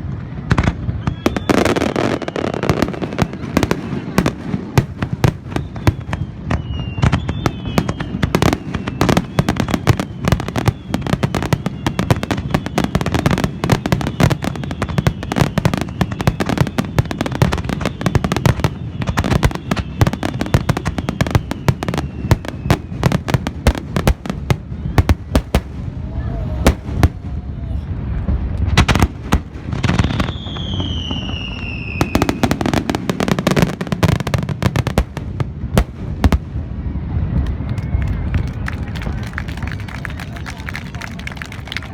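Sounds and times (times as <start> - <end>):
fireworks bursting and crackling: 0.0 - 41.9
faint high whistle: 0.8 - 4.3, 5.4 - 23.1, 30.1 - 32.8.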